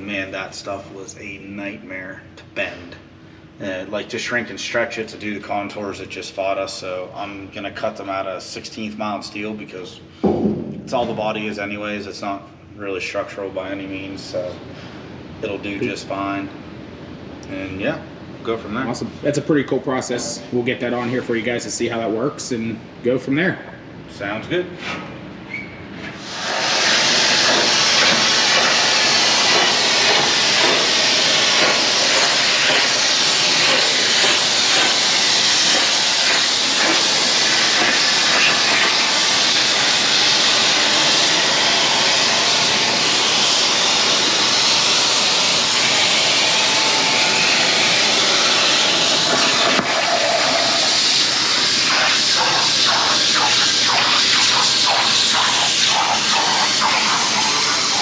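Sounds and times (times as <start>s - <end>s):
plasma cutter hissing: 26.2s - 58.0s.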